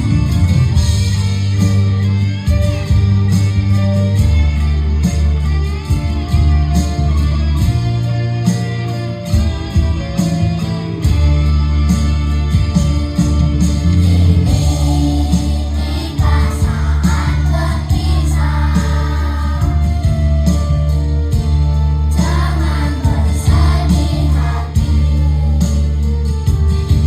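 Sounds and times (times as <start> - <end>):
instrumental backing with bass line: 0.0 - 27.0
children's choir singing: 14.4 - 20.1, 22.1 - 25.9.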